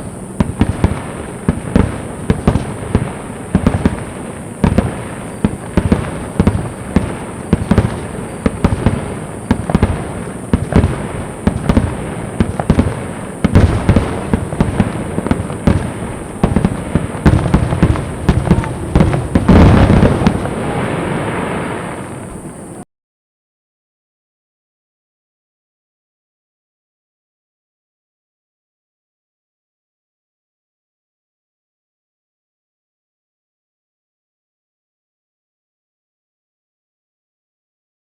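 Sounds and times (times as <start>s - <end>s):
fireworks bursting: 0.0s - 22.8s.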